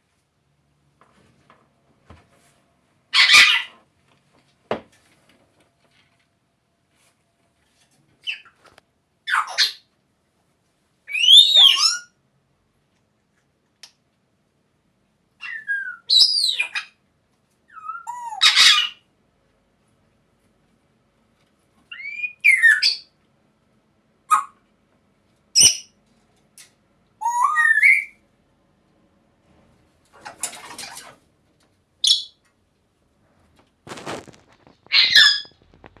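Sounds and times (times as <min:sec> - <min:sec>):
parrot squawking: 0:03.2 - 0:03.7, 0:09.3 - 0:09.8, 0:11.1 - 0:12.1, 0:17.7 - 0:19.0, 0:34.9 - 0:35.5
parrot whistling and squawking: 0:03.2 - 0:03.7, 0:11.1 - 0:12.1, 0:15.4 - 0:17.0, 0:17.7 - 0:19.0, 0:21.9 - 0:23.1, 0:27.2 - 0:28.2, 0:34.9 - 0:35.6.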